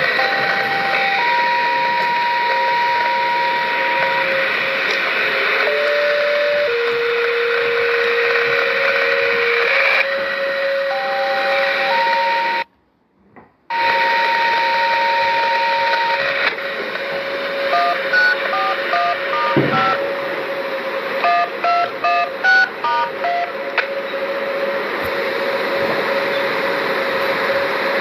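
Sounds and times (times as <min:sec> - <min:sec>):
long steady beep: 0:00.0 - 0:04.5, 0:05.7 - 0:12.7, 0:13.7 - 0:20.2, 0:21.2 - 0:24.8.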